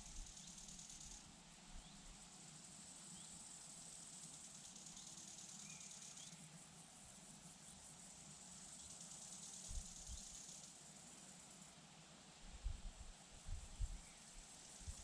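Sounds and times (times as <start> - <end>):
crickets trilling: 0.0 - 1.2, 7.5 - 11.7
wind rumble on microphone: 12.5 - 14.0.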